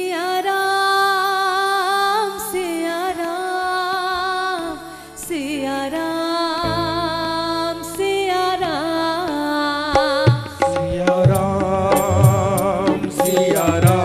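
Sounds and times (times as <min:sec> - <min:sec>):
person singing devotional melody: 0:00.0 - 0:14.0
drum strokes: 0:10.0 - 0:14.0.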